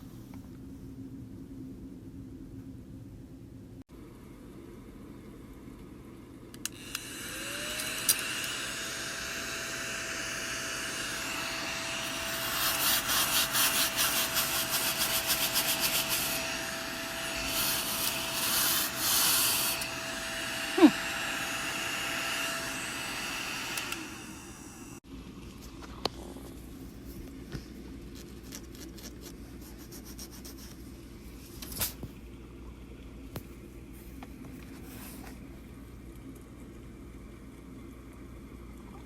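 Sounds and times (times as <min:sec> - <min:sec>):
small vacuum motor whining: 0:06.6 - 0:25.0.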